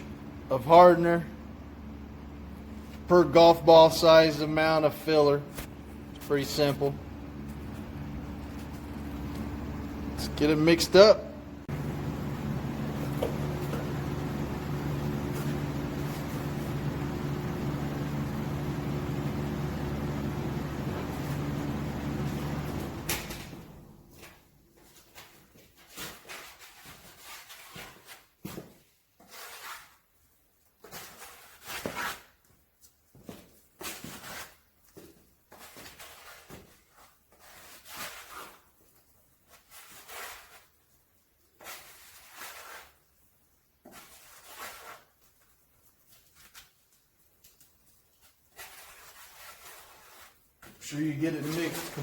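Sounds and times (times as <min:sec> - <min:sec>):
steady hum: 0:00.0 - 0:24.4
spreader scraping mixing board: 0:11.7 - 0:23.9, 0:50.8 - 0:52.0.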